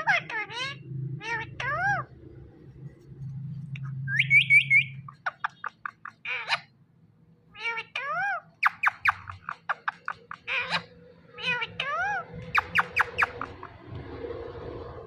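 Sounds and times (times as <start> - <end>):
parrot chirps and squawks: 0.0 - 2.2, 3.7 - 6.8, 7.5 - 13.8
parrot whistling: 4.1 - 5.7, 8.6 - 11.5, 12.4 - 13.7.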